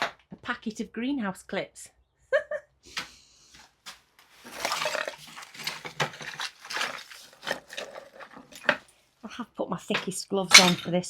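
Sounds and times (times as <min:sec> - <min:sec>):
items rustling and clattering: 0:03.5 - 0:09.1, 0:09.9 - 0:11.0.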